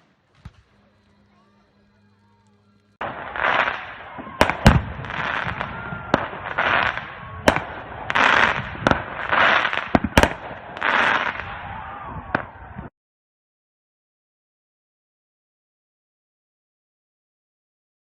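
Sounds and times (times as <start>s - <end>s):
fireworks hissing: 0.0s - 12.7s
fireworks bangs: 0.0s - 12.9s.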